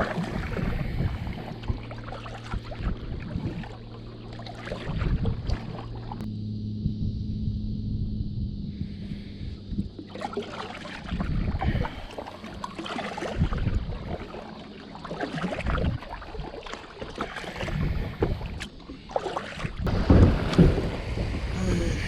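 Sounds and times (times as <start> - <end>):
wind buffeting microphone: 0.0 - 3.7, 11.1 - 12.1, 13.4 - 14.3, 17.6 - 18.6, 19.7 - 22.0
water splashing around kayak: 0.0 - 6.3, 8.9 - 22.0.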